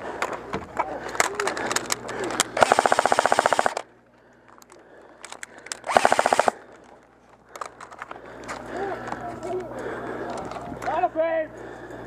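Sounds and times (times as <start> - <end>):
airsoft gun full-auto bursts: 2.6 - 3.8, 5.8 - 6.6.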